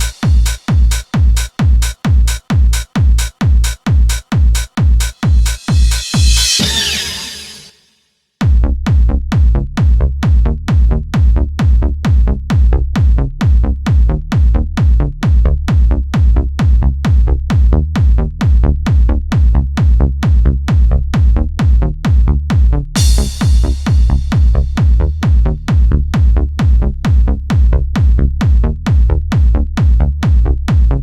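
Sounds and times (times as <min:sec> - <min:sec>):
drum machine kick: 0:00.0 - 0:07.5, 0:08.4 - 0:31.0
pulsing bass line: 0:00.0 - 0:07.7, 0:08.6 - 0:31.0
noise sweep: 0:04.6 - 0:07.8.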